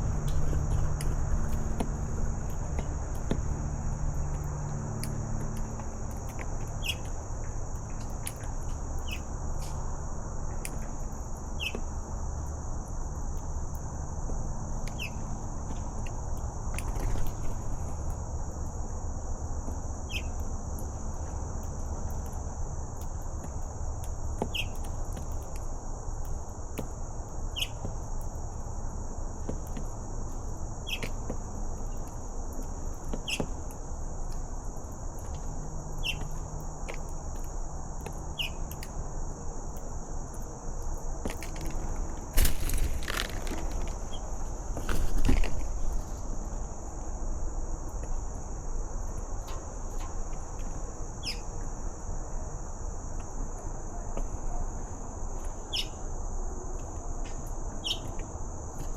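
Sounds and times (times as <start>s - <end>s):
high-pitched insect chorus: 37.2s - 53.9s.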